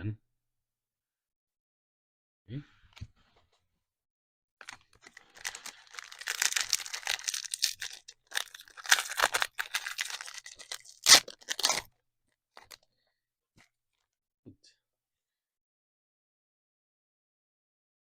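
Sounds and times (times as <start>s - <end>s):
foil wrapper tearing and crinkling: 4.6s - 11.9s, 12.6s - 12.8s.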